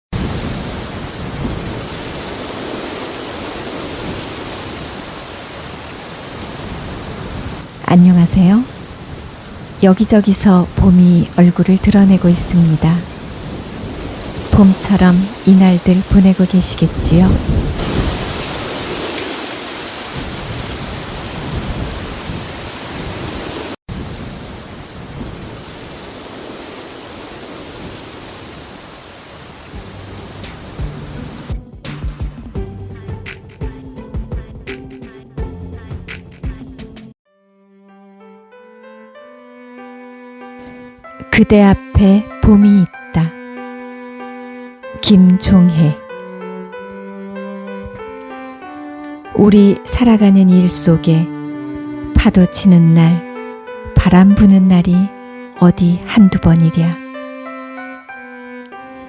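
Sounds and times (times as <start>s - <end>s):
steady rain: 0.1s - 31.6s, 44.0s - 52.6s
low rumbling: 29.8s - 31.6s.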